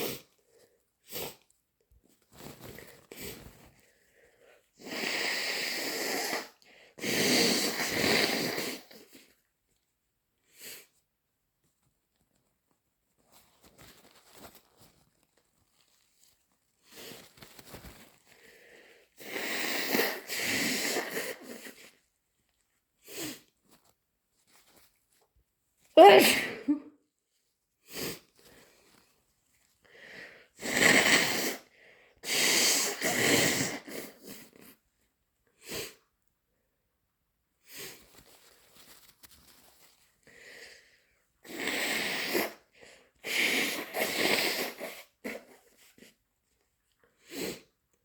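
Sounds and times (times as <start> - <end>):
person sniffing through stuffy nose: 0.0 - 1.5, 2.3 - 9.4, 10.5 - 11.0, 16.8 - 22.1, 23.0 - 23.9, 27.8 - 29.0, 29.9 - 34.9, 35.6 - 36.1, 37.6 - 46.2, 47.1 - 47.8
person sneezing: 26.0 - 27.0.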